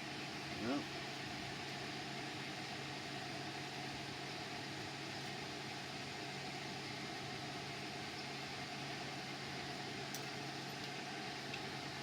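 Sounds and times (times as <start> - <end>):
background hum: 0.0 - 12.0.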